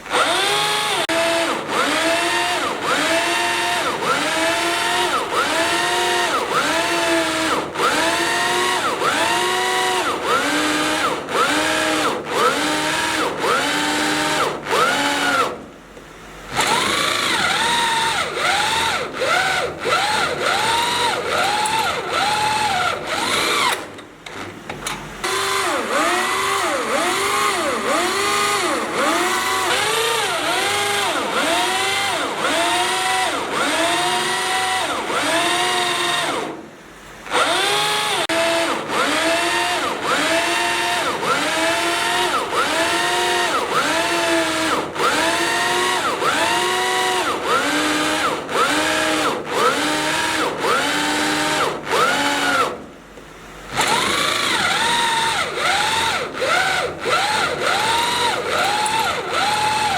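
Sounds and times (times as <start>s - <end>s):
power drill boring into steel: 0.0s - 15.6s, 16.5s - 23.9s, 25.2s - 36.6s, 37.2s - 52.8s, 53.7s - 59.9s.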